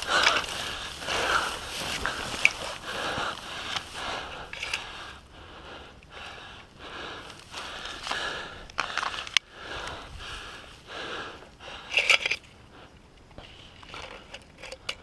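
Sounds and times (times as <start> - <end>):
scraping rustling footsteps: 0.0 - 5.1, 7.0 - 10.7
gear rustling: 0.0 - 5.2.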